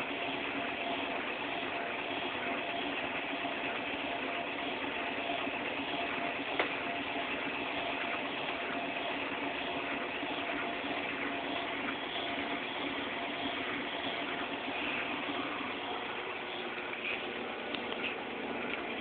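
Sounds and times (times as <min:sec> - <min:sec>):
washing machine spinning: 0:00.0 - 0:19.0.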